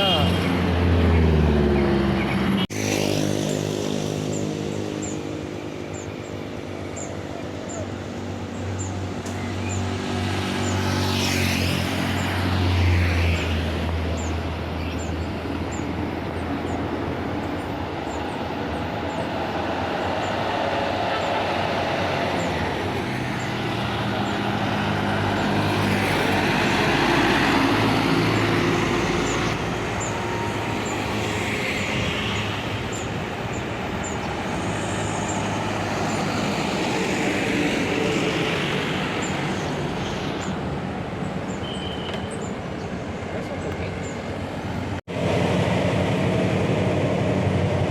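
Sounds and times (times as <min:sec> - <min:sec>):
vehicles passing close by: 0:00.0 - 0:47.9
heavy engine drone: 0:26.6 - 0:37.9, 0:45.1 - 0:47.9.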